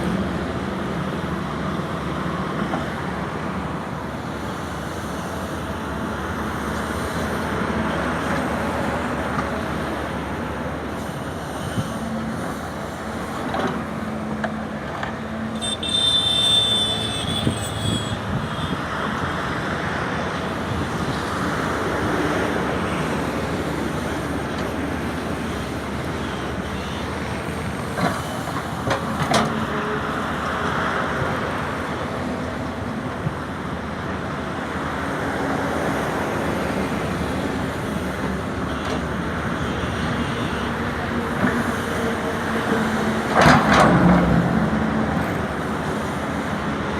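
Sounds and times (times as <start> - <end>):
excavator diesel engine running: 0.0 - 46.9
high squeal: 15.6 - 18.7.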